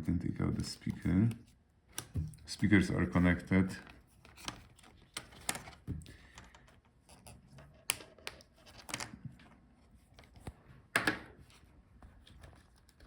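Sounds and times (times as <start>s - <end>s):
plastic parts clicking and scraping: 3.8s - 11.1s.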